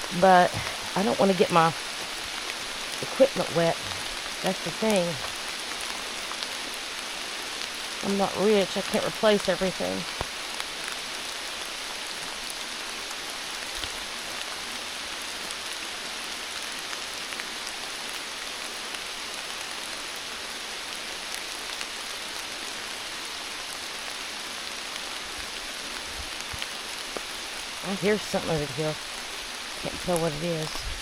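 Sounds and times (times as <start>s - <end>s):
rain falling through woods: 0.0s - 31.0s.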